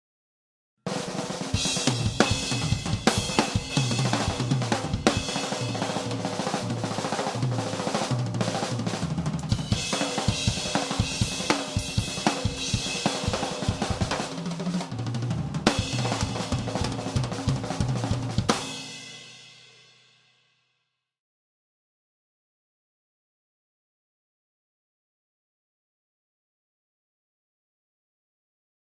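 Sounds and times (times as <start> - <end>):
drum kit ringing out: 0.9 - 19.8
drum kit solo: 0.9 - 20.2.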